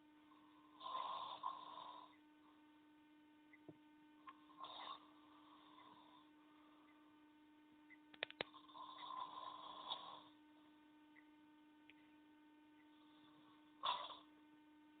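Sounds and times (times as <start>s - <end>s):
steady electrical hum: 0.0s - 15.0s
person snoring: 0.3s - 2.2s, 4.4s - 6.3s, 8.5s - 10.4s, 13.0s - 14.3s.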